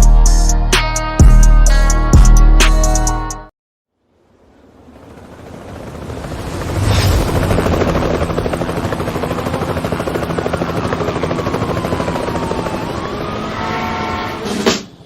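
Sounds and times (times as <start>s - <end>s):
helicopter whining tone: 4.4s - 15.0s
helicopter rotor chopping: 4.6s - 15.0s.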